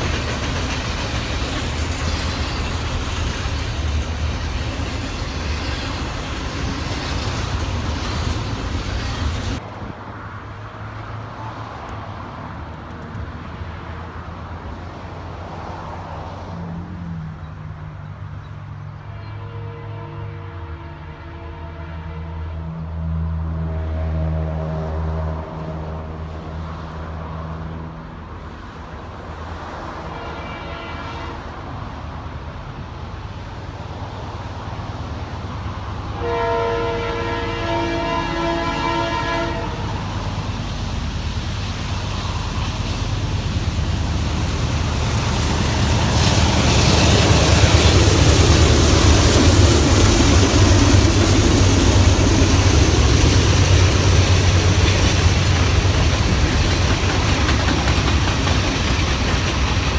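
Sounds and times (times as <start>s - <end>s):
train cars rolling: 0.0s - 10.7s, 24.6s - 59.9s
diesel locomotive rumbling: 0.0s - 59.9s
train chime horn: 19.0s - 22.8s, 30.1s - 31.5s, 36.1s - 40.1s.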